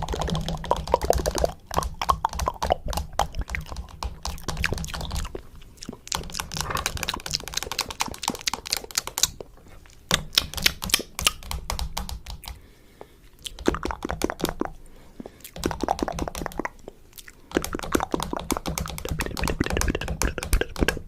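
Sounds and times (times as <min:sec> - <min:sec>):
rapid irregular clicking: 0:00.0 - 0:05.4, 0:06.1 - 0:09.4, 0:10.1 - 0:12.6, 0:17.5 - 0:21.0.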